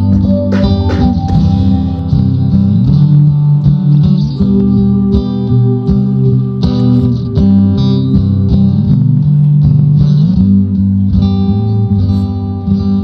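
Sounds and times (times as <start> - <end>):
steady pulse: 0.0 - 3.7
bass line: 0.0 - 13.0
plucked guitar notes: 0.0 - 13.0.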